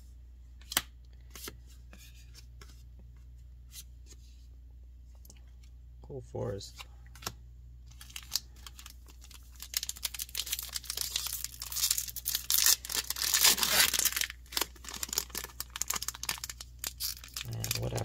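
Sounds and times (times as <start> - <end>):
wrapper tearing and crinkling: 7.9 - 18.0.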